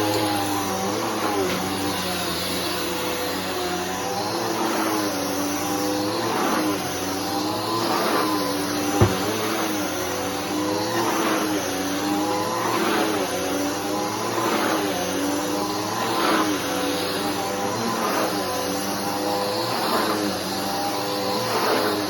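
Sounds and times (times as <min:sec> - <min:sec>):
upright vacuum cleaner running: 0:00.0 - 0:22.0
sharp knock: 0:09.0 - 0:09.6.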